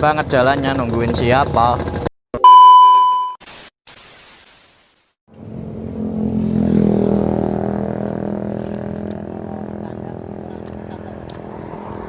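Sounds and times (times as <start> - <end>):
motorcycle two-stroke engine running: 0.0 - 2.1.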